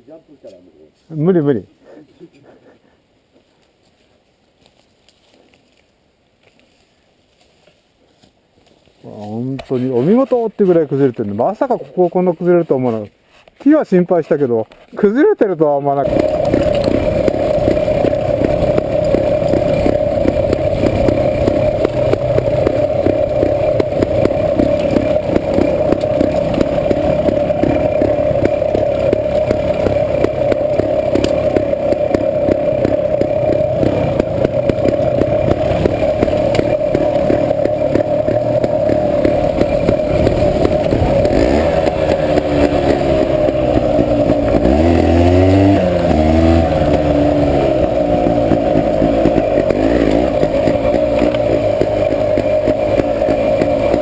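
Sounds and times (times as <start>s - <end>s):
motorcycle engine revving: 15.9s - 54.0s.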